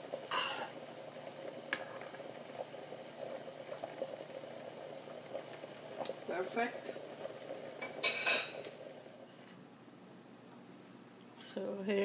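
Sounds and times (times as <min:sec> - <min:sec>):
sauce bubbling in a pan: 0:00.0 - 0:09.5.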